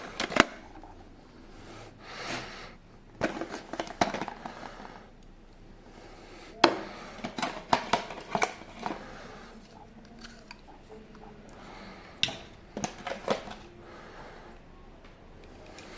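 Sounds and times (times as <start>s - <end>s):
plastic packaging crinkling and clicking: 0.0s - 1.1s, 3.1s - 5.3s, 6.6s - 13.8s.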